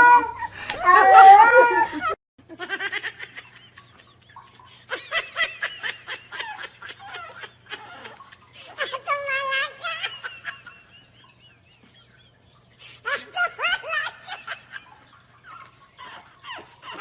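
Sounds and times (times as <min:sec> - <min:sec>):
cat yowling: 0:00.0 - 0:02.1
person laughing: 0:00.2 - 0:15.0.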